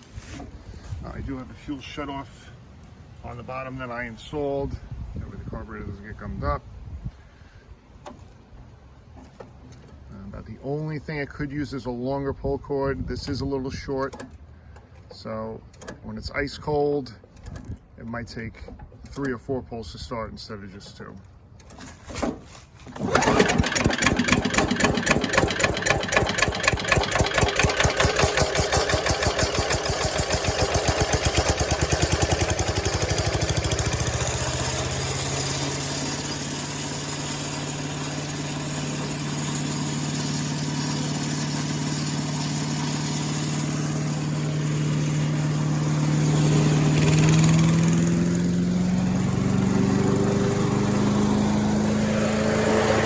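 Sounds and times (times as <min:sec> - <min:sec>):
small gasoline engine running: 0:22.9 - 0:53.0.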